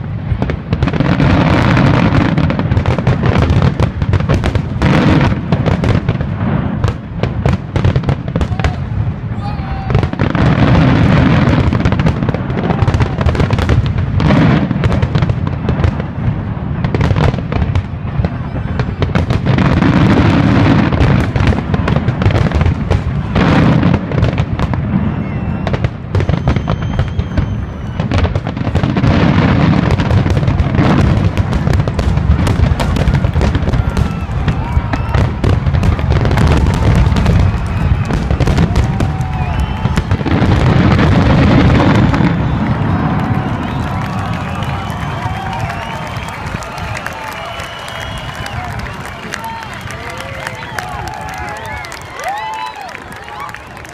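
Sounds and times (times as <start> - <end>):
firework whistling: 0.0 - 52.8
firework booms and crackling: 0.0 - 53.9.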